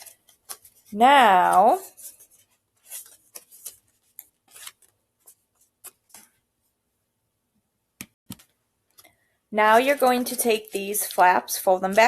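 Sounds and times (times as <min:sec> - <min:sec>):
paper rustling and scraping: 0:00.0 - 0:06.4.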